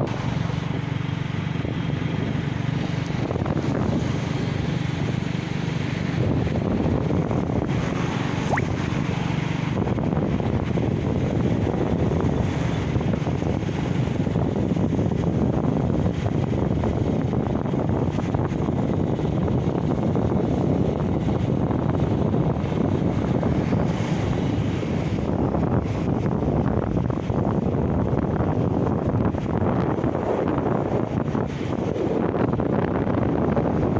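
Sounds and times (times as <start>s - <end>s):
sea surf washing: 0.0s - 14.6s, 22.2s - 27.4s
wind buffeting microphone: 0.0s - 33.9s.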